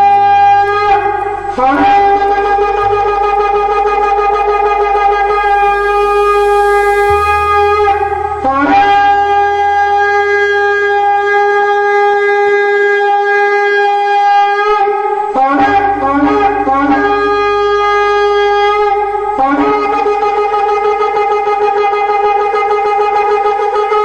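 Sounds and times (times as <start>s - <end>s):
ram's horn blasts: 0.0s - 12.2s.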